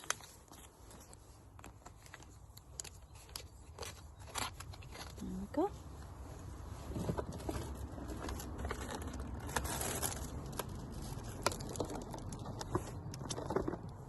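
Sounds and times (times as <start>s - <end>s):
packaging rustling: 0.0s - 5.5s, 6.8s - 13.7s
small clicks and knocks: 11.3s - 14.0s.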